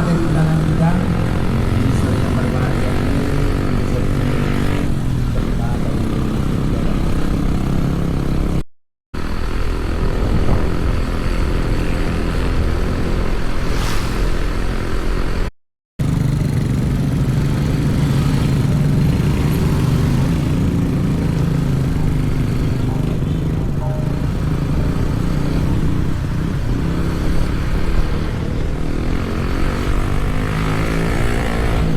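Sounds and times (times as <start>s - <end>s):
road and wind noise: 0.0s - 8.6s, 9.2s - 31.9s
vehicle engine running: 9.2s - 31.9s.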